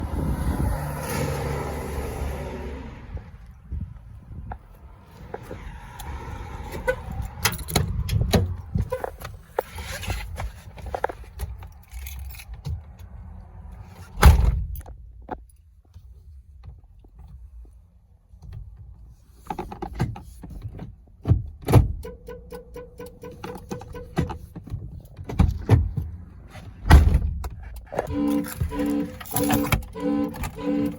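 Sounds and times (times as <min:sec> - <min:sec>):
keys jangling: 0:11.6 - 0:12.6, 0:28.3 - 0:30.9
heavy car door thump: 0:14.2 - 0:14.8, 0:26.8 - 0:27.4.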